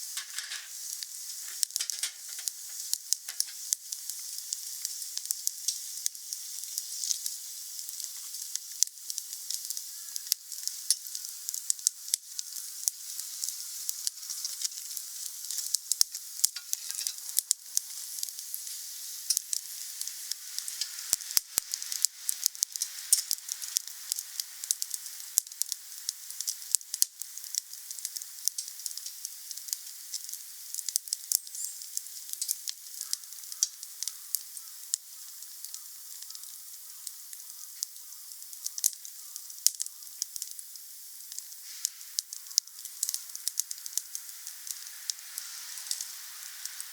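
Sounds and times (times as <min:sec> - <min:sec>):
wood fire crackling: 0:00.0 - 0:46.9.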